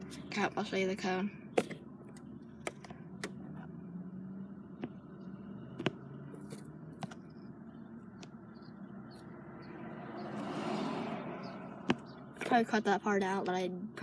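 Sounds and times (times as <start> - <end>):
cards clicking and tapping: 5.8 - 7.2.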